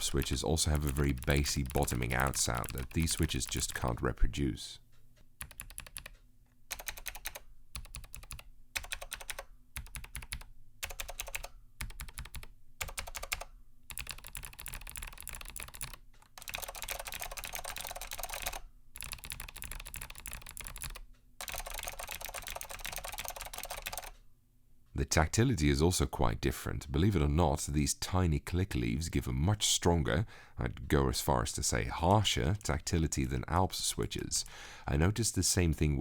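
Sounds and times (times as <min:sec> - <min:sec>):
typing on mechanical keyboard: 0:00.0 - 0:04.0, 0:05.4 - 0:24.2.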